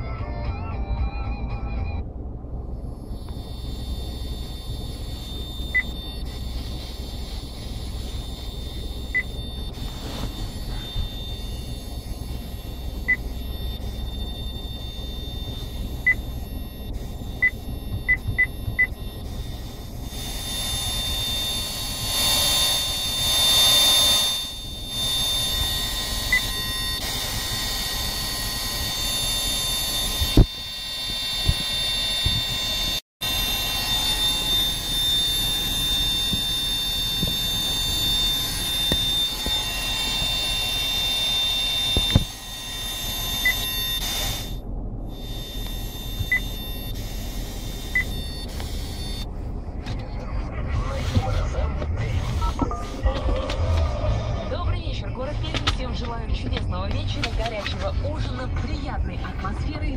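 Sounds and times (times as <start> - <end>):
low rumble of car: 0.0 - 59.9
short beeps: 2.8 - 49.3
high-pitched whistle from car stereo: 3.0 - 49.3.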